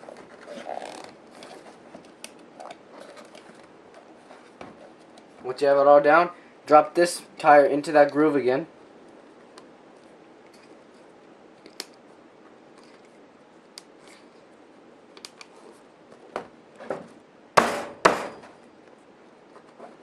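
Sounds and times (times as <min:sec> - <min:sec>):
loud knocks: 0:17.6 - 0:18.5.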